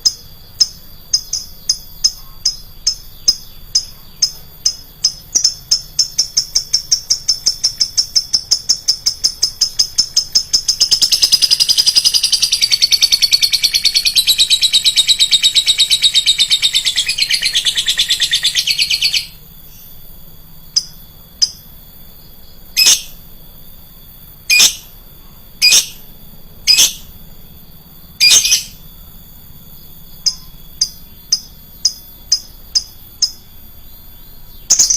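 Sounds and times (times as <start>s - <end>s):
bird chattering: 0.0s - 19.9s, 22.4s - 23.2s, 24.5s - 24.9s, 25.6s - 26.0s, 28.2s - 28.8s, 30.2s - 33.5s, 34.5s - 34.9s
bird chirping shrilly: 0.6s - 20.0s, 22.4s - 23.2s, 24.5s - 24.9s, 25.6s - 27.1s, 28.2s - 28.8s, 30.2s - 34.9s.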